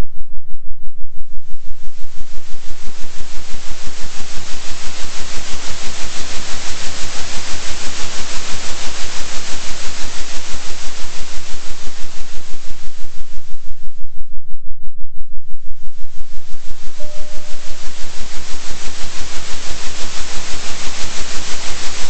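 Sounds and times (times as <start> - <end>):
deep hum: 13.4 - 19.0
oscillating electronic noise: 15.5 - 22.0.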